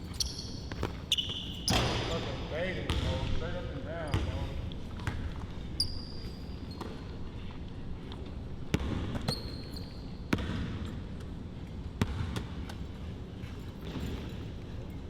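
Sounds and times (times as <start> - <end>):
basketball bouncing: 0.7 - 5.4, 8.7 - 9.5, 10.3 - 11.0, 12.0 - 12.8.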